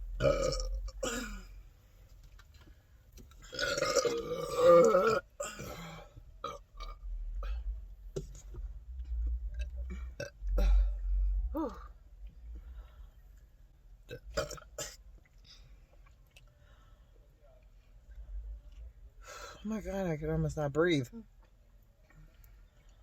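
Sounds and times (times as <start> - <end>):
woman burping: 0.2 - 1.5, 3.5 - 7.6, 9.9 - 10.9, 11.5 - 11.9, 14.1 - 15.0.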